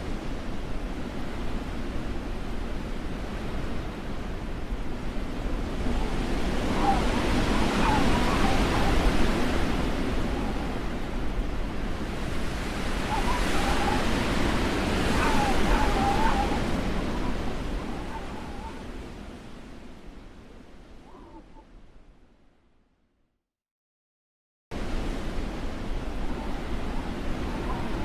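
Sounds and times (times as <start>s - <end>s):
blizzard wind gusting: 0.0s - 21.9s, 24.8s - 28.0s
wavering wind whistle: 5.6s - 11.3s, 11.9s - 19.2s.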